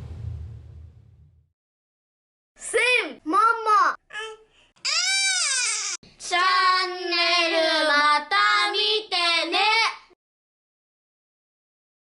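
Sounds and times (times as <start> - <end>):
child making sing-song sounds: 4.1 - 10.2.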